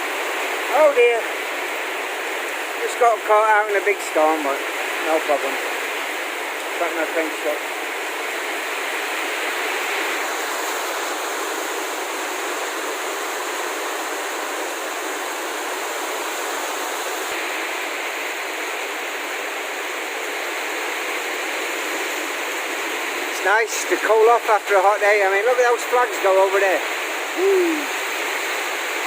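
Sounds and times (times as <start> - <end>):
heavy rain hissing: 0.0 - 29.0.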